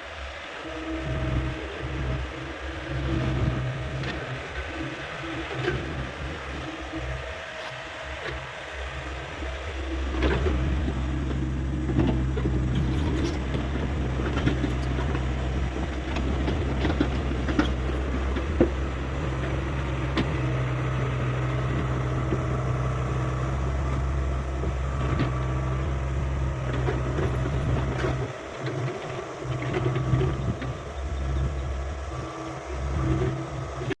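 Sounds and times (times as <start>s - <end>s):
excavator diesel engine running: 0.0s - 34.0s.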